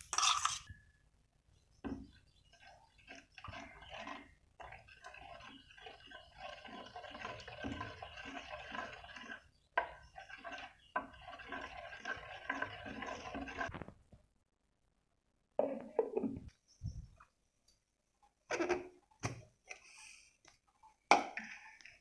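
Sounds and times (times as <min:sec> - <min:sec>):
liquid sloshing in a bowl: 0:01.8 - 0:14.0.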